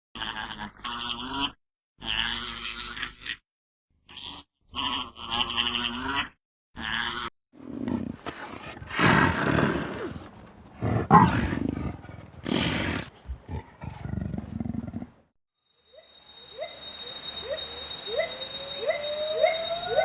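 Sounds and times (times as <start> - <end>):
farm animal calling: 7.6 - 15.1.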